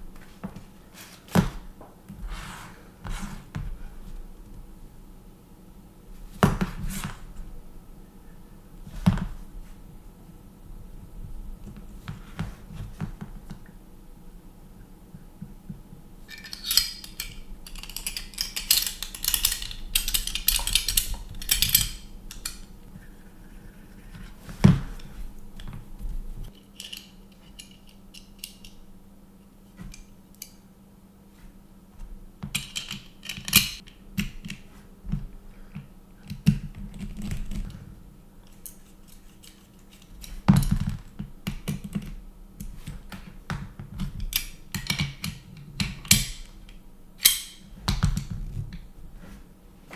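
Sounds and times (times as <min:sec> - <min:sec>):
clicks and rattles of small parts: 0:16.2 - 0:22.7, 0:26.5 - 0:28.8, 0:32.5 - 0:34.4, 0:38.4 - 0:43.2, 0:44.0 - 0:48.7.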